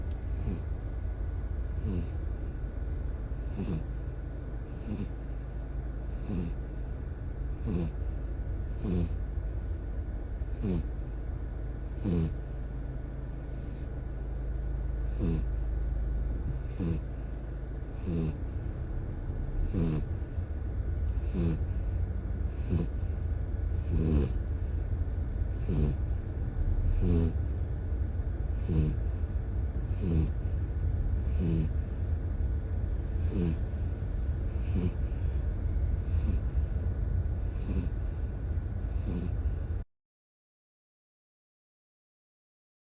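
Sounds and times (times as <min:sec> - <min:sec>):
dog snoring: 0:00.0 - 0:00.7, 0:01.6 - 0:02.7, 0:03.3 - 0:06.8, 0:07.5 - 0:09.6, 0:10.4 - 0:11.2, 0:11.8 - 0:12.6, 0:13.2 - 0:14.0, 0:14.9 - 0:15.6, 0:16.4 - 0:18.8, 0:19.4 - 0:24.8, 0:25.5 - 0:27.7, 0:28.4 - 0:32.1, 0:32.9 - 0:39.8
car low rumble: 0:00.0 - 0:39.8.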